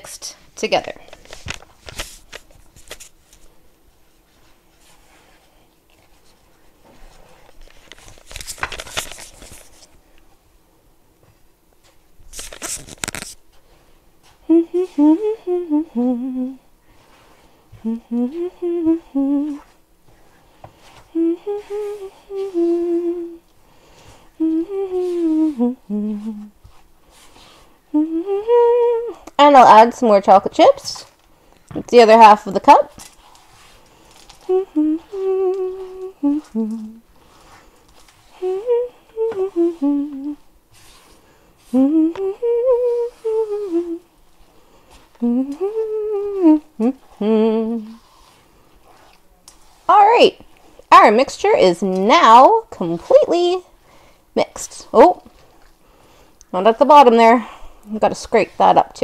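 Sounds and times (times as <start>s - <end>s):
woman humming: 14.4s - 16.7s, 17.8s - 19.8s, 21.1s - 23.5s, 24.4s - 26.6s, 27.9s - 29.9s, 34.4s - 37.1s, 38.2s - 40.5s, 41.6s - 44.1s, 45.1s - 48.2s.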